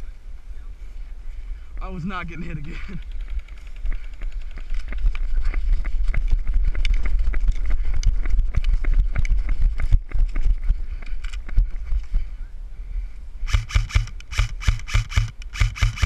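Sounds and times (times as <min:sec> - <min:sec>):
running footsteps: 0:02.6 - 0:12.2
wind rumble on camera: 0:02.9 - 0:14.4.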